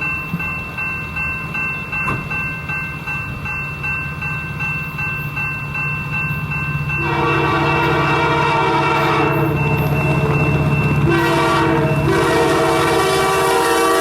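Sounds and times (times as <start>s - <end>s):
low rumble of train: 0.0s - 14.0s
railroad crossing bell ringing: 0.0s - 14.0s
locomotive horn chord: 7.0s - 14.0s.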